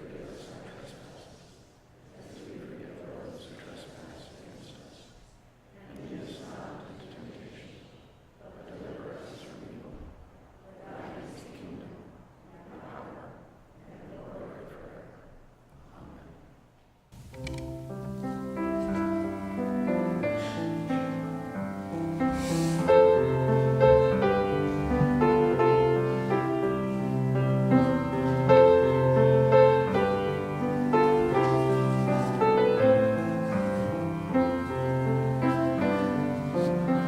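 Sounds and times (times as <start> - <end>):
piano playing slow chords: 17.2 - 37.0.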